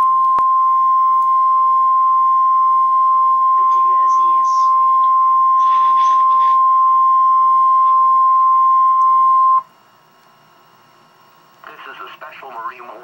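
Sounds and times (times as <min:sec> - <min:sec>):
steady alarm tone: 0:00.0 - 0:09.6.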